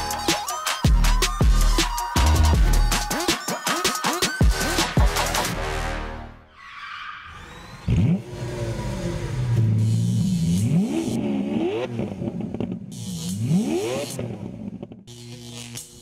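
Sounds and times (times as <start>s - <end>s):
synthesized car engine revving: 7.4s - 16.0s.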